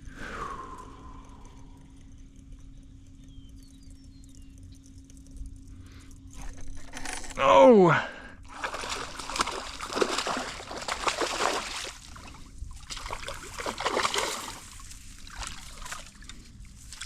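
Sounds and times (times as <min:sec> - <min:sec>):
pond water sloshing and splashing: 0:08.4 - 0:17.0.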